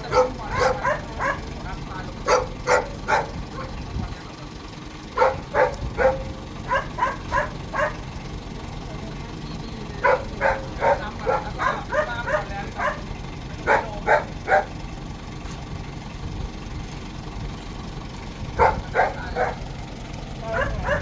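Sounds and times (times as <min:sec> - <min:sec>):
dog barking: 0:00.0 - 0:01.6, 0:02.2 - 0:03.8, 0:05.2 - 0:08.1, 0:10.0 - 0:14.8, 0:18.6 - 0:19.7, 0:20.4 - 0:21.0
steady low rumble: 0:00.0 - 0:21.0.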